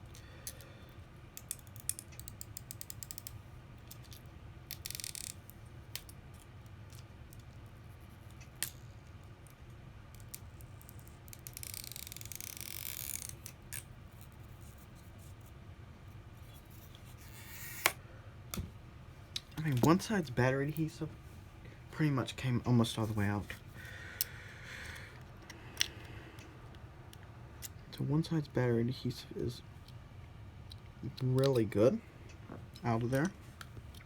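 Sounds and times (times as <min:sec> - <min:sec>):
rasping squeaking adhesive strip: 0:10.9 - 0:13.5.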